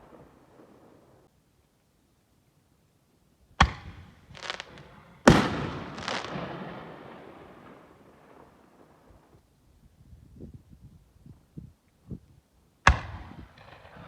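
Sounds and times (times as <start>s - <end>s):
firework bangs: 3.6s - 9.0s.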